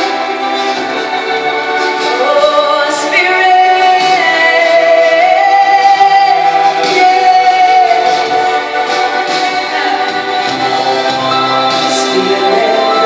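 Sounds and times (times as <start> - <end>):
musical accompaniment: 0.0 - 13.0
woman singing worship song: 2.1 - 10.9, 11.9 - 13.0.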